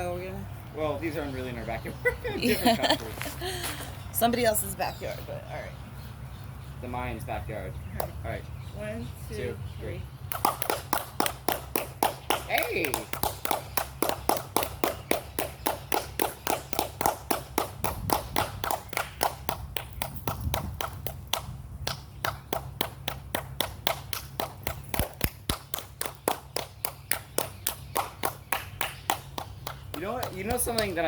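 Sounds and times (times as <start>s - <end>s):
chirp-like clap echo: 7.9s - 8.2s, 10.3s - 31.0s
hand claps: 10.3s - 31.0s.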